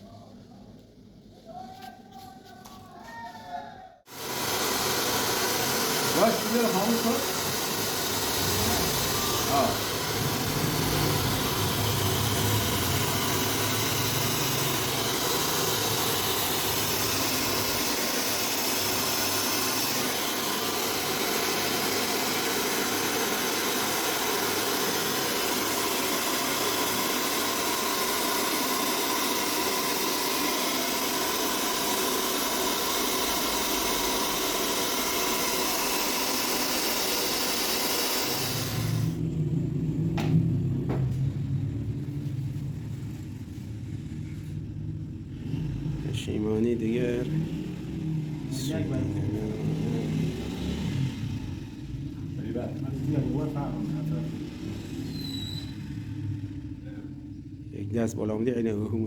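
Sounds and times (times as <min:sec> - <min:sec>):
rushing hissing machine noise: 0:04.1 - 0:39.2, 0:45.4 - 0:57.0.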